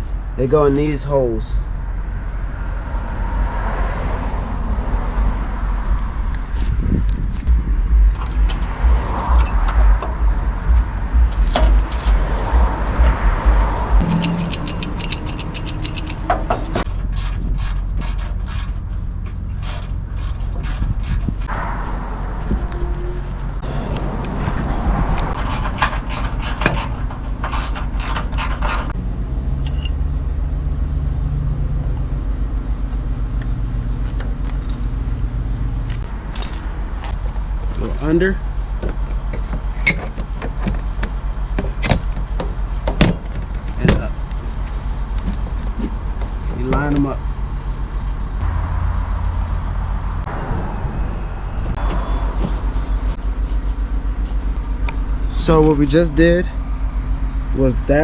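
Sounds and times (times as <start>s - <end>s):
steady low rumble: 0.0s - 39.7s, 41.2s - 58.0s
metallic clicks and scrapes: 14.0s - 21.6s, 25.2s - 29.0s
faint high squeal: 21.7s - 24.0s, 50.2s - 53.2s.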